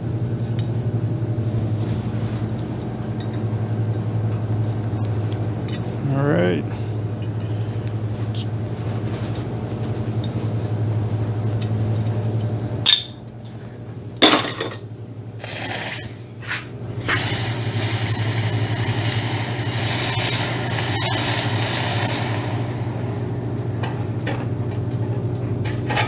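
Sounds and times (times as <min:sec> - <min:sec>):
steady machine hum: 0:03.5 - 0:08.2, 0:13.9 - 0:26.0.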